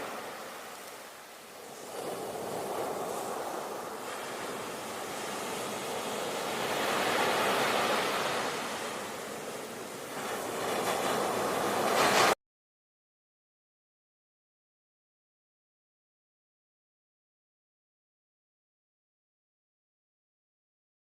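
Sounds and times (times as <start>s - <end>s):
ocean surf washing in: 0.0s - 12.4s.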